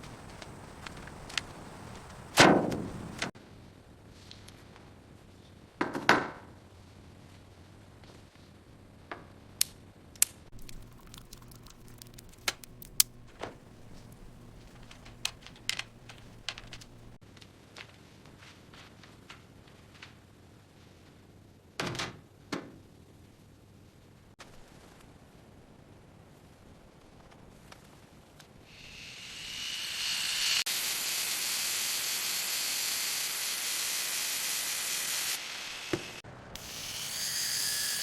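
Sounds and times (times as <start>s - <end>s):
sharp clicks and taps: 10.5s - 17.2s.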